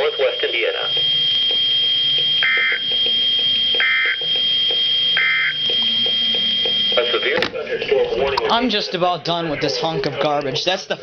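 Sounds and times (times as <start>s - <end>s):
digital data tone bursts: 0.0s - 7.4s.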